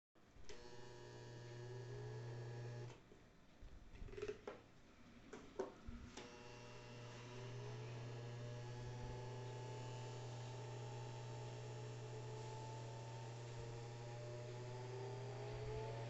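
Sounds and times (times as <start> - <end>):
electric fan motor humming: 0.4 - 3.0, 6.2 - 16.0.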